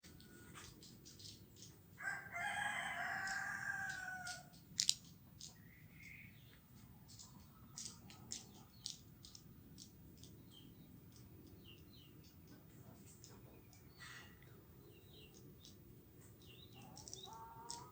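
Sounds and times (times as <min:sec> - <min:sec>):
rooster crowing: 0:02.0 - 0:04.5.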